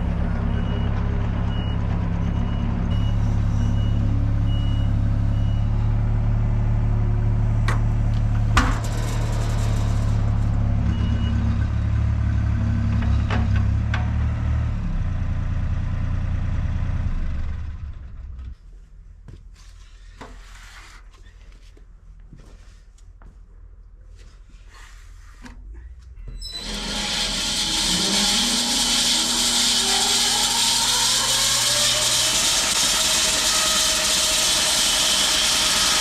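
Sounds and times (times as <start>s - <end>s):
diesel engine running: 0.0s - 13.8s
reversing alarm beeping: 0.4s - 5.9s.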